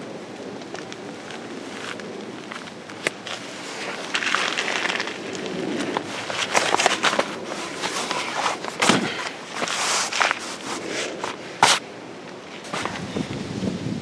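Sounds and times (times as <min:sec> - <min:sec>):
rustling: 0:00.4 - 0:11.8.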